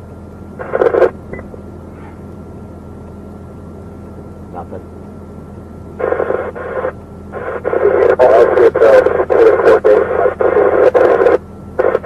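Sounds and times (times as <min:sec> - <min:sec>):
voice over radio speaker: 0:00.6 - 0:01.2, 0:04.5 - 0:04.9, 0:06.0 - 0:12.0.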